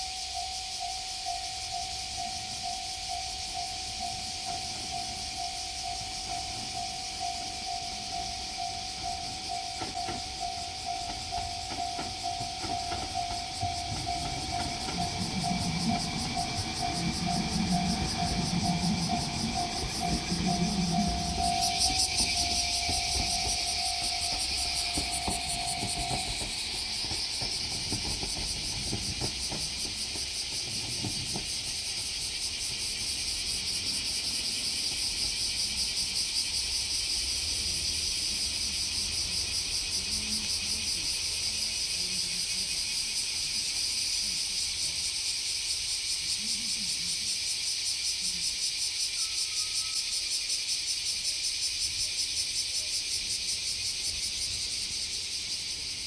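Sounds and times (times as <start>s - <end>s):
cicadas buzzing: 0.0s - 56.0s.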